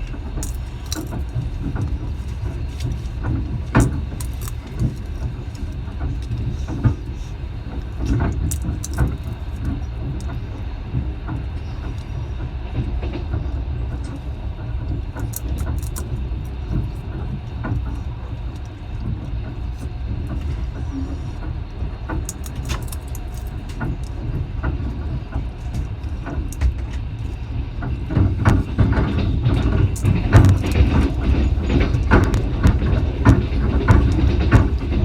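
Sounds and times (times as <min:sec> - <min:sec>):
clicks and rattles: 0:00.0 - 0:10.4, 0:14.9 - 0:20.6, 0:22.1 - 0:35.0
train rumbling: 0:00.0 - 0:35.0.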